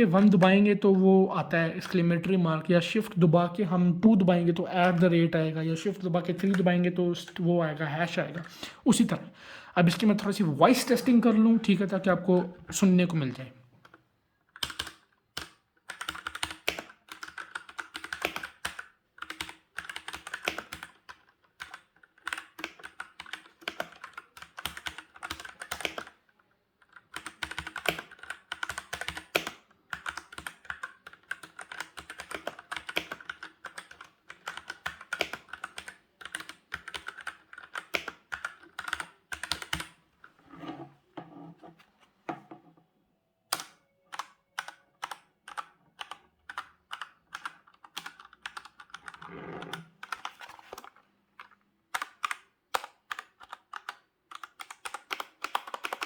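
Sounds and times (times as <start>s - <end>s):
typing on mechanical keyboard: 14.5s - 40.0s, 43.5s - 56.0s.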